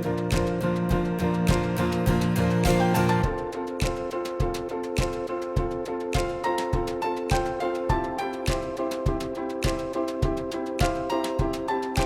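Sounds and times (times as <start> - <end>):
plucked guitar-like notes: 0.0 - 3.5
background music with beat: 0.0 - 12.0.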